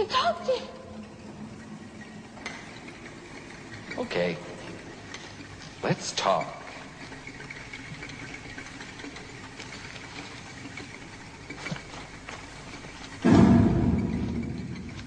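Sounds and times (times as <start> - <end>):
loud low drum hit: 13.2 - 14.9.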